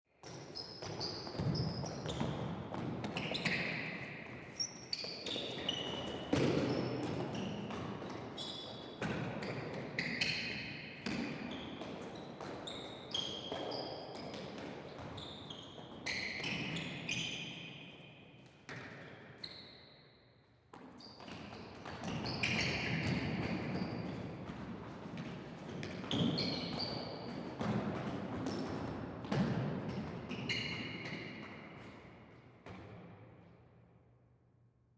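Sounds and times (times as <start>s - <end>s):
shoes squeaking on gym floor: 0.2s - 9.0s, 15.0s - 17.9s, 25.8s - 27.4s, 30.3s - 32.0s.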